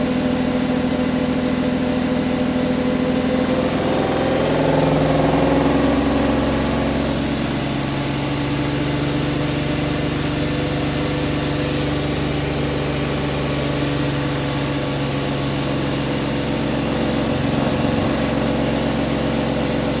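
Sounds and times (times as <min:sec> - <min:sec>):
washing machine spinning: 0:00.1 - 0:20.0
high even whine: 0:00.2 - 0:20.0.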